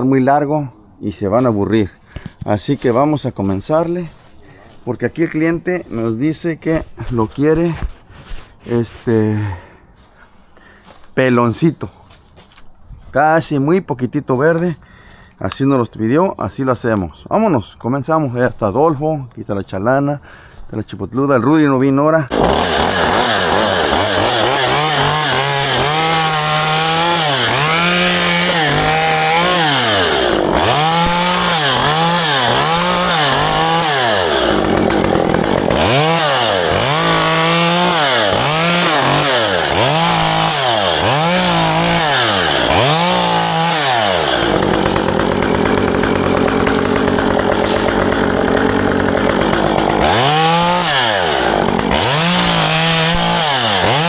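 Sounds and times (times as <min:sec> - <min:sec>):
chainsaw engine revving: 0:22.3 - 0:54.0.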